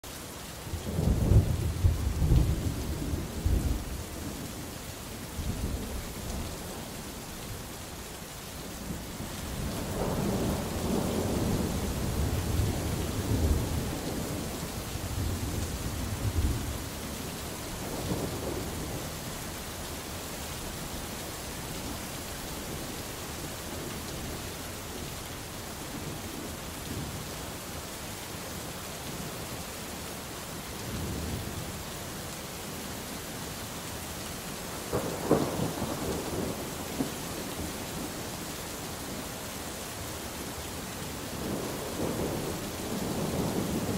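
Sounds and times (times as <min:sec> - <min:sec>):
heavy rain: 0:00.0 - 0:43.9
rolling thunder: 0:34.9 - 0:38.2.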